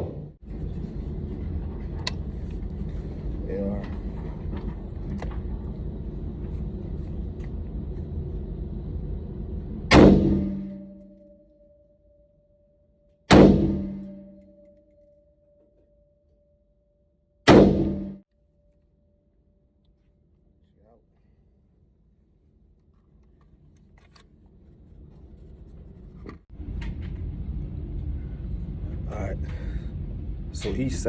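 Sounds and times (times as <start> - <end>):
rifle shots: 9.9 - 10.9, 13.3 - 14.3, 17.5 - 18.2.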